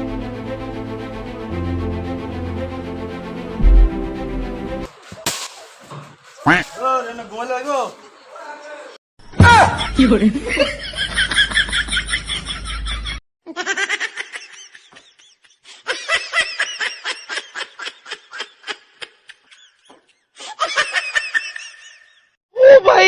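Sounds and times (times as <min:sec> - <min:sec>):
high-pitched laughter: 0:09.6 - 0:22.2.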